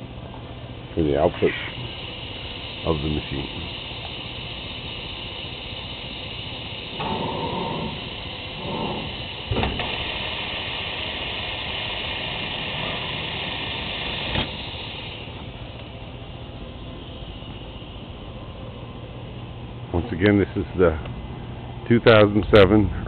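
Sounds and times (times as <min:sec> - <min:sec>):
machine whirring: 0:00.9 - 0:18.9
soldering machine hissing: 0:00.9 - 0:19.2.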